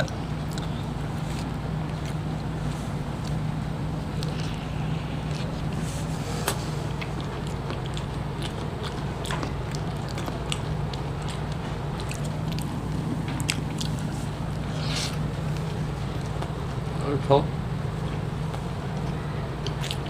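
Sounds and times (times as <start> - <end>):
person chewing and crunching food: 0.0 - 17.0, 18.0 - 20.0
steady low hum: 0.0 - 20.0.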